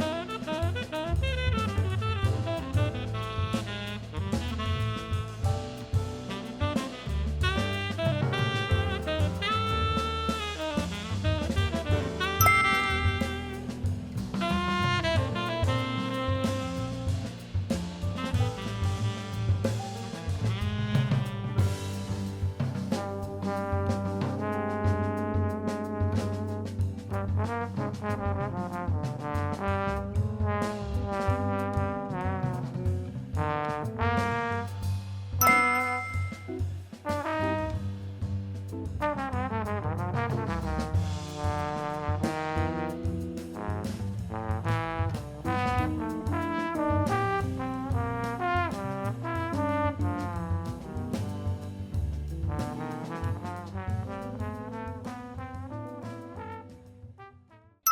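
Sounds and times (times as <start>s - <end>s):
bass line: 0.0s - 23.2s
horn melody: 0.0s - 32.2s, 35.4s - 38.0s, 39.0s - 51.6s, 52.5s - 57.3s
beat: 11.3s - 15.7s, 35.4s - 36.8s.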